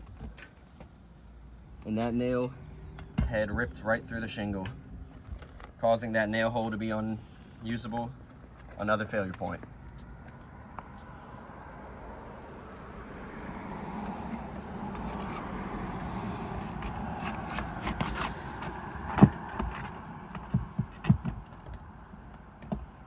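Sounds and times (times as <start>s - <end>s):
metal bar scraping under shingles: 14.0s - 21.7s.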